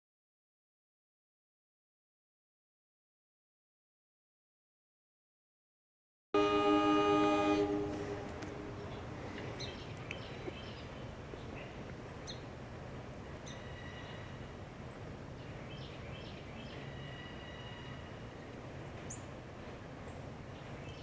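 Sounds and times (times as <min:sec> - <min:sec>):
low steady hum: 0:06.4 - 0:20.4.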